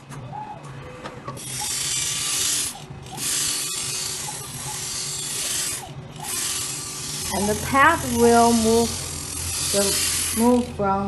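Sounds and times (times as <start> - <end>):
motor hum: 0.0 - 11.0
grinding pad hissing on glass: 1.4 - 10.8.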